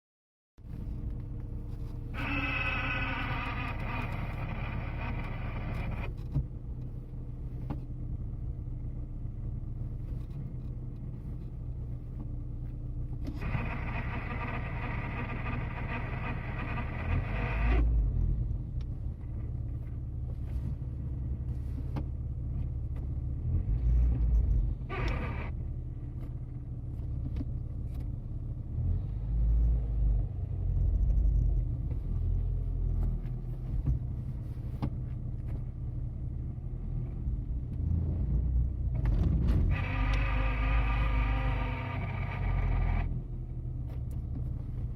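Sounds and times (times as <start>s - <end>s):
car engine idling: 0.6s - 29.6s, 30.2s - 39.1s, 39.7s - 44.9s
gearbox whine: 0.7s - 6.9s, 13.0s - 19.9s, 23.3s - 26.7s, 37.3s - 43.3s.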